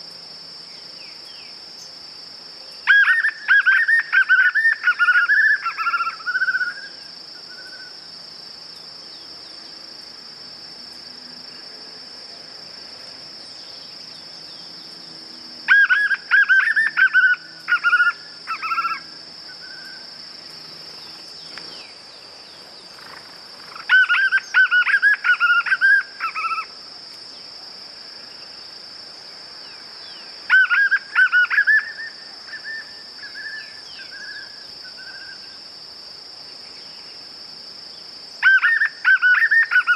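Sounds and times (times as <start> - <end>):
high insect drone: 0.0 - 39.9
bird whistling song: 2.9 - 7.9, 15.7 - 20.0, 23.7 - 26.7, 30.5 - 35.5, 38.4 - 39.9.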